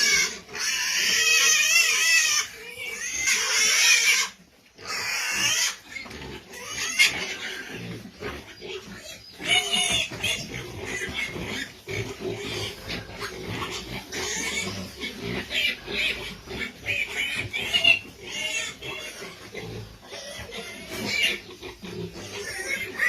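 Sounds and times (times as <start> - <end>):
pig grunting: 0.0 - 23.0.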